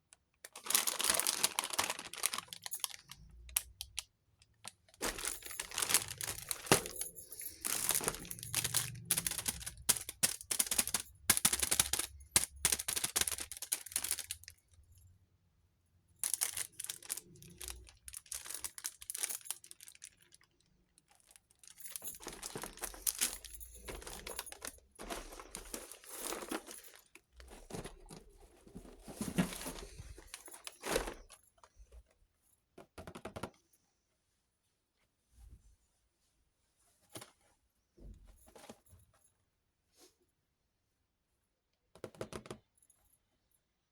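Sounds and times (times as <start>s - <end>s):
packaging crinkling and tearing: 0.5s - 14.5s, 16.2s - 20.5s, 21.6s - 28.2s, 29.2s - 31.4s.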